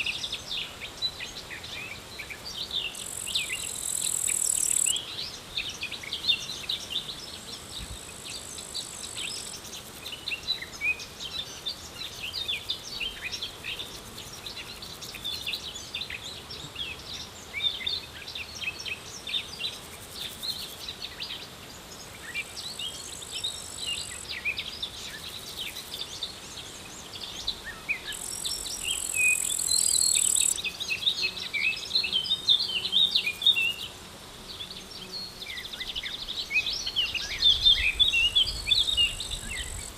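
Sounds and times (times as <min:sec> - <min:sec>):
high insect trill: 0:02.7 - 0:05.3, 0:27.7 - 0:39.9.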